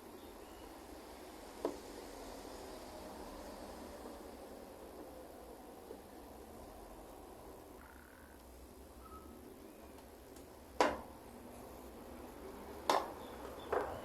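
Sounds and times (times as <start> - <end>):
low background hiss: 0.0 - 14.0
faint short chirps: 9.0 - 9.4.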